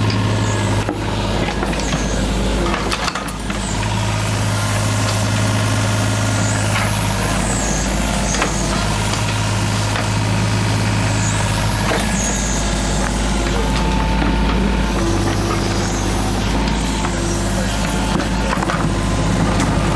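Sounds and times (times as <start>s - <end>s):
engine humming: 0.0s - 19.9s.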